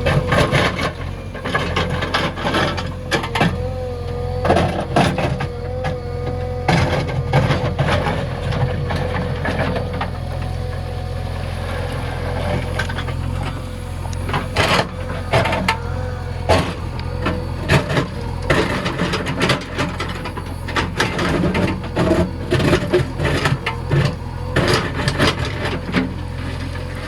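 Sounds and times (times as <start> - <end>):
diesel engine running: 0.0 - 27.0
machine knocks and scraping: 14.2 - 26.2.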